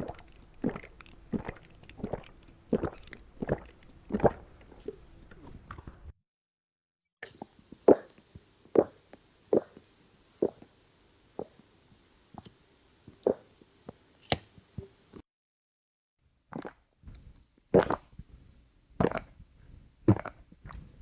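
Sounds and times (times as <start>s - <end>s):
person gulping water: 0.0s - 6.1s, 16.5s - 16.8s, 17.8s - 18.0s, 19.0s - 19.3s, 20.1s - 20.8s.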